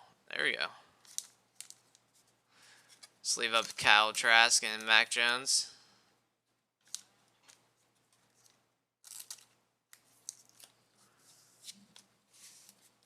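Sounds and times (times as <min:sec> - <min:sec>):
trading cards sliding into sleeves: 0:11.0 - 0:13.0.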